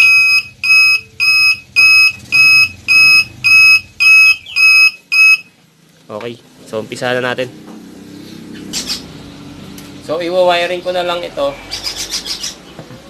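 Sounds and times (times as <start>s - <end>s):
loud high alarm beeps: 0.0s - 5.5s.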